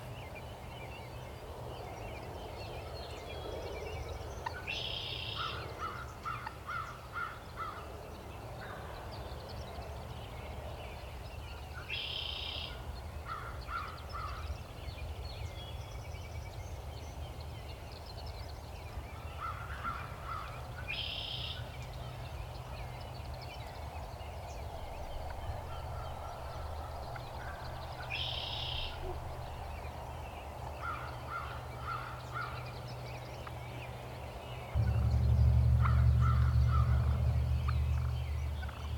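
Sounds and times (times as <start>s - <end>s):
birds calling: 18.6s - 38.9s
steady low rumble: 24.5s - 30.0s, 34.7s - 38.9s.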